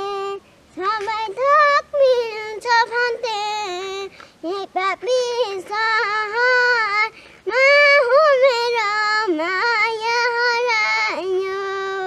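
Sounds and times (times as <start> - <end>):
girl singing unaccompanied: 0.0 - 12.0.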